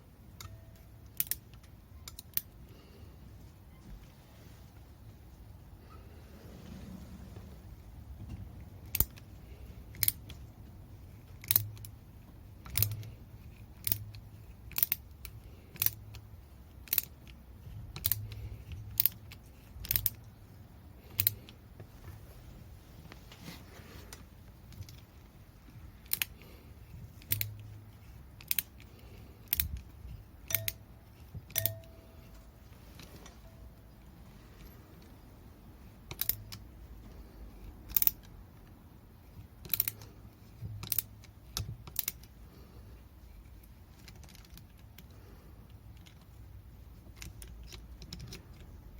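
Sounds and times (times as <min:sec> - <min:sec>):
hand tools clicking on metal: 0:18.0 - 0:20.2.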